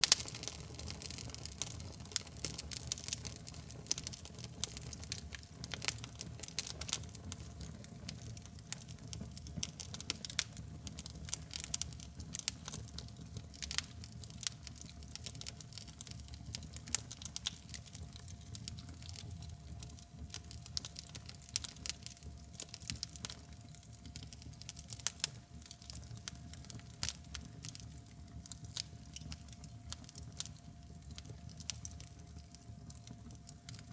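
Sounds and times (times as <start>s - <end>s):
fire crackling: 0.0s - 33.9s.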